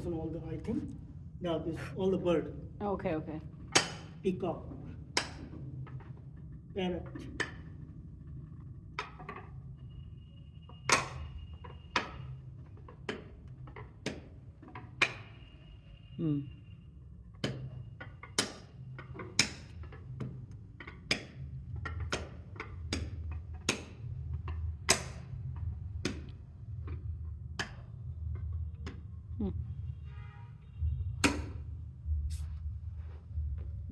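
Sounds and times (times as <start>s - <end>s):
steady low hum: 0.0s - 12.8s, 18.8s - 33.9s.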